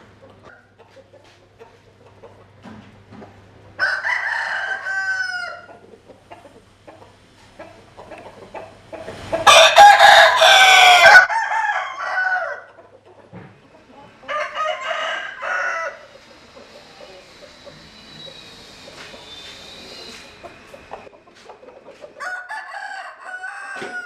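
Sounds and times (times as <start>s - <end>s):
chicken clucking: 0.0s - 24.0s
rooster crowing: 3.8s - 5.8s, 9.4s - 12.7s, 14.3s - 16.1s, 22.2s - 24.0s.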